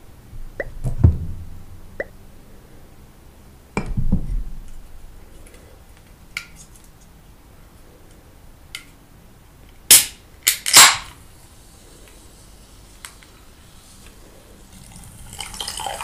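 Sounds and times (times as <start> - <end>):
dull low thud: 0.3 - 2.0.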